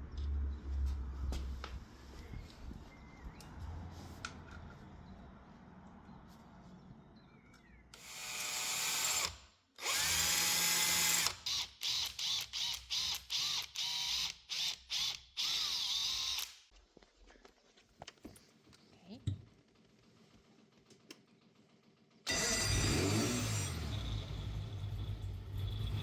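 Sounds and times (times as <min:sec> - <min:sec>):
power drill spinning: 0:08.0 - 0:16.7, 0:22.3 - 0:26.0.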